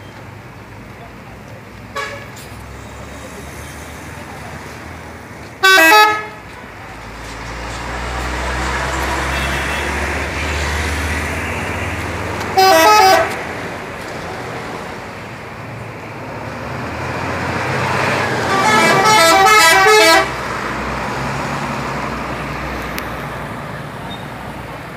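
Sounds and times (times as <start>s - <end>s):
bus engine rumble: 0.0s - 24.9s
road traffic: 0.0s - 24.9s
melodic bus horns: 1.9s - 2.5s, 5.6s - 6.8s, 7.8s - 14.4s, 17.8s - 20.5s.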